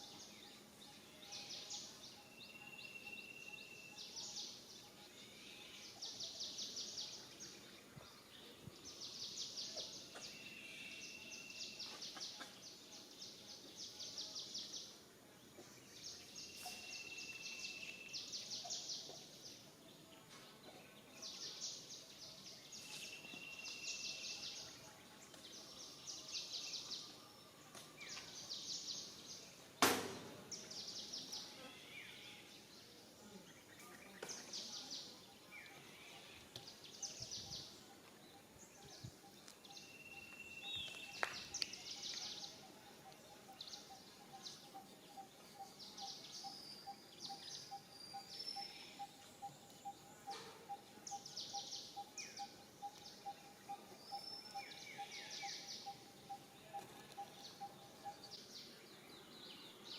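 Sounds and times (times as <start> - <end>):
sharp knock: 29.8 - 30.4.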